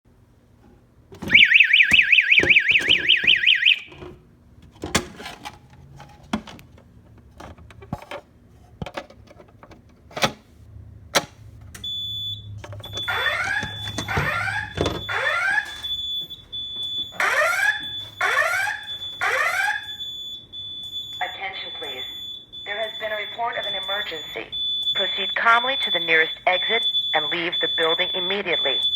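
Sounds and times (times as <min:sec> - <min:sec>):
fast warbling alarm tone: 0:01.3 - 0:03.9, 0:12.3 - 0:16.2, 0:17.1 - 0:28.9
steady high beep: 0:21.2 - 0:28.9
sweeping alert tones: 0:21.2 - 0:28.9.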